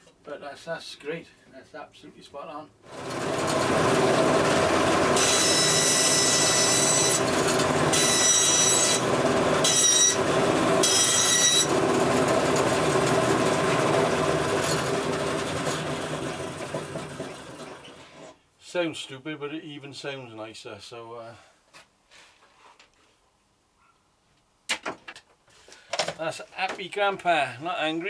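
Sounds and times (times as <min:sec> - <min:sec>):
bandsaw cutting wood whine: 0:02.9 - 0:18.3
bandsaw motor humming: 0:02.9 - 0:18.3.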